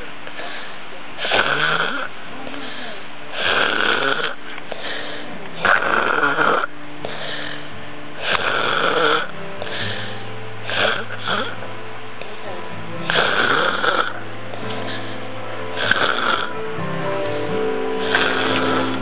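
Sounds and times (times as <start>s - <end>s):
man snoring: 1.2s - 2.1s, 3.3s - 11.6s, 13.0s - 15.2s, 15.8s - 16.6s, 18.0s - 19.0s.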